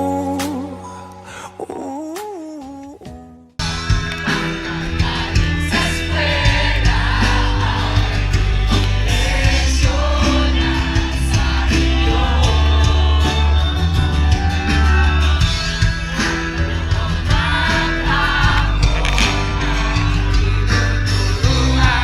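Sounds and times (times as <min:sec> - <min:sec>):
person singing: 0:00.0 - 0:03.6, 0:16.1 - 0:22.0
electronic dance-pop music: 0:11.5 - 0:22.0.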